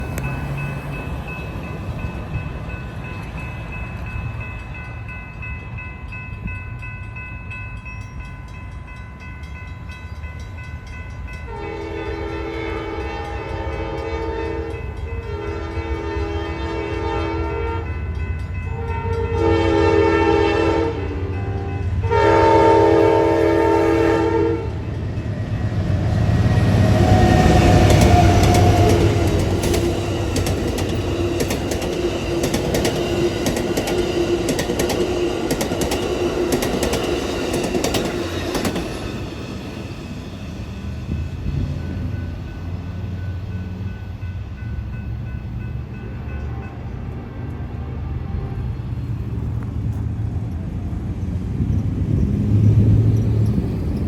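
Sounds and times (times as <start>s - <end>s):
train rumbling: 0.0s - 54.0s
train air horn blasts: 11.5s - 18.1s, 18.7s - 24.9s, 46.4s - 49.2s.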